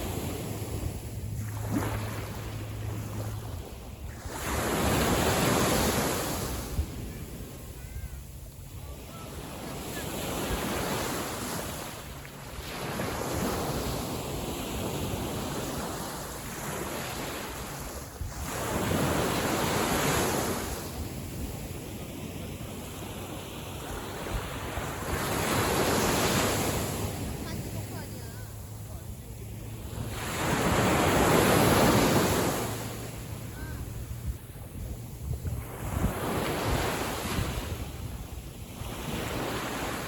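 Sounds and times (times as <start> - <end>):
small waves washing on a beach: 0.0 - 40.0
wind buffeting microphone: 26.7 - 39.5.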